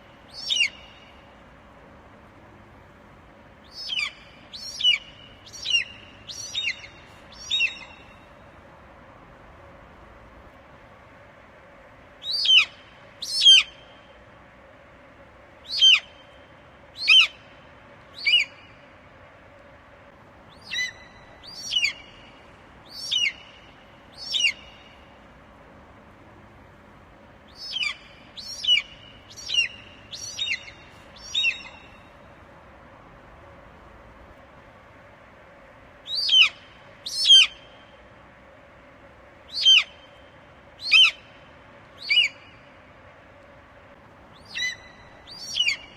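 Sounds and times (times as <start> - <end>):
eagle calling: 0.3 - 1.1, 3.7 - 8.2, 20.5 - 22.3, 22.9 - 25.0, 27.5 - 32.0, 36.1 - 37.7, 39.5 - 40.1, 40.8 - 41.3, 42.0 - 42.5, 44.4 - 45.9.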